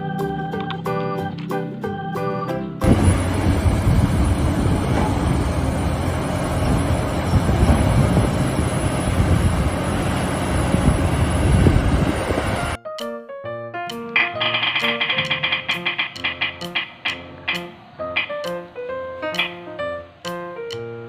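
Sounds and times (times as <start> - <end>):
excavator engine rumbling: 2.8 - 12.8.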